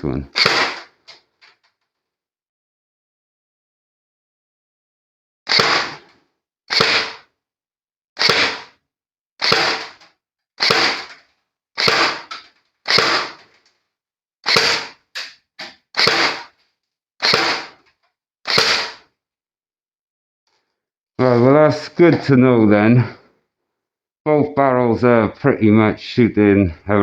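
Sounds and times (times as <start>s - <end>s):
airsoft rifle shots: 0.3s - 1.0s, 5.5s - 6.1s, 6.7s - 7.3s, 8.2s - 8.8s, 9.4s - 10.0s, 10.6s - 11.1s, 11.8s - 13.5s, 14.4s - 15.3s, 16.0s - 16.6s, 17.2s - 17.8s, 18.5s - 19.1s.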